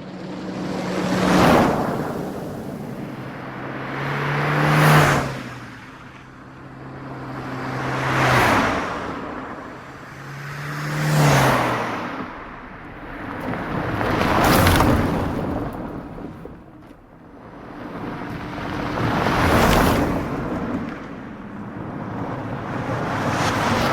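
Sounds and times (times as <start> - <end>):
electric car passing by: 0.0 - 23.9.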